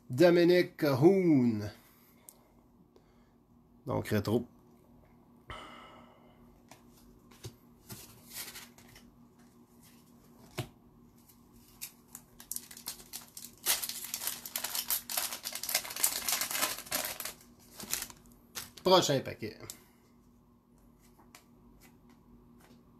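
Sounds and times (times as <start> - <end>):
wrapper crinkling: 11.6 - 19.1.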